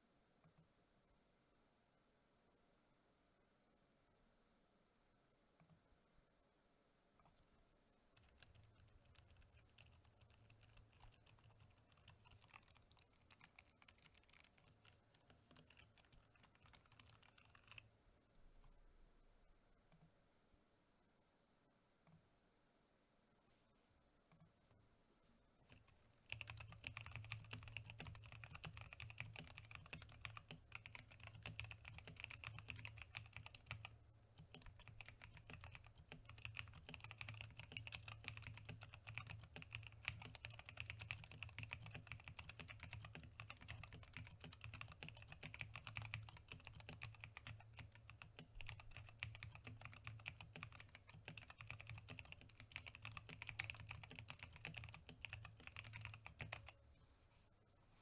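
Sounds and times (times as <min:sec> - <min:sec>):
mechanical keyboard typing: 0:08.2 - 0:17.9, 0:25.7 - 0:56.8.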